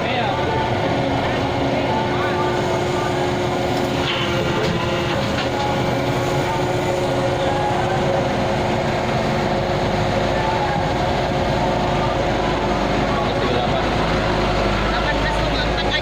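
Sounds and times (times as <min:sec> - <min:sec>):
heavy machinery humming and rumbling: 0:00.0 - 0:16.0.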